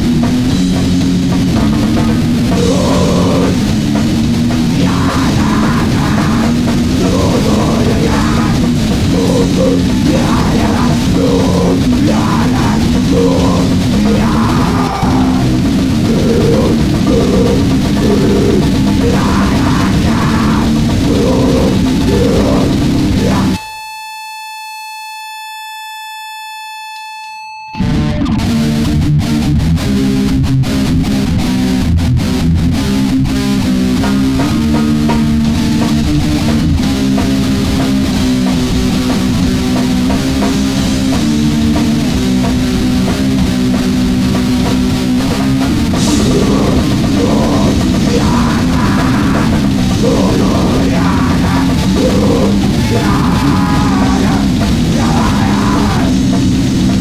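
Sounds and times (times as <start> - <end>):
noise band playing: 0.0 - 23.7, 27.8 - 57.0
steady pitched tone: 0.6 - 27.8, 45.7 - 57.0.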